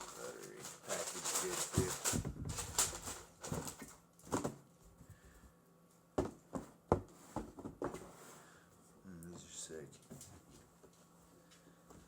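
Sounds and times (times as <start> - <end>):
box packing rustling: 0.0 - 4.6.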